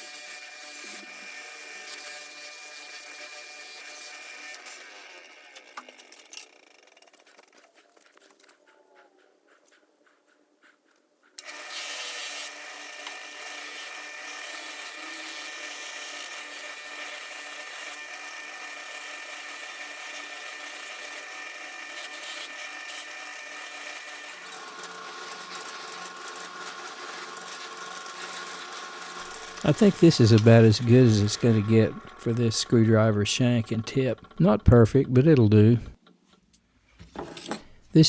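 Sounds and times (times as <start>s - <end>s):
power tool high whine: 0.0s - 5.9s, 11.4s - 34.3s.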